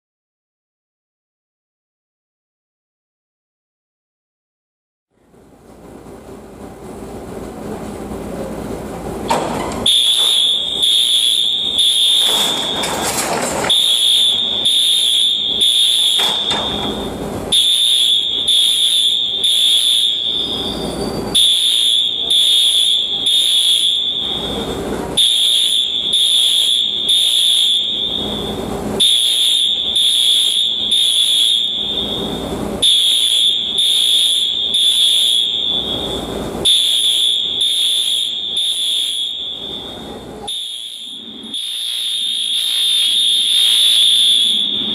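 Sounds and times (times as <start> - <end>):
fire alarm horn pulsing: 9.8 - 44.9.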